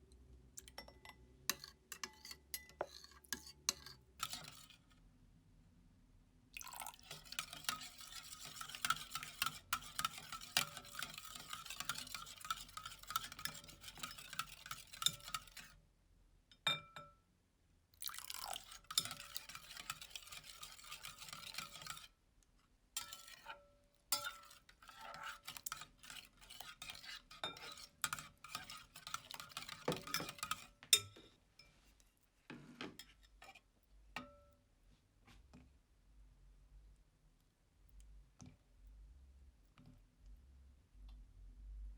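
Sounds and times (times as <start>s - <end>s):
slime stirred in a bowl: 0.6s - 5.0s, 6.6s - 15.8s, 18.0s - 22.2s, 22.9s - 34.1s.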